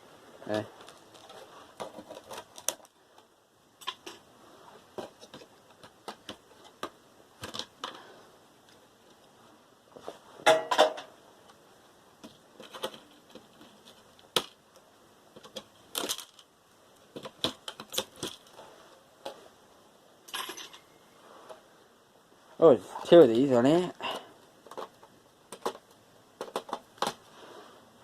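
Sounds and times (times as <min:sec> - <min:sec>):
computer parts clicking and clattering: 0:12.2 - 0:14.6, 0:15.3 - 0:16.5, 0:17.1 - 0:18.6, 0:24.1 - 0:27.2.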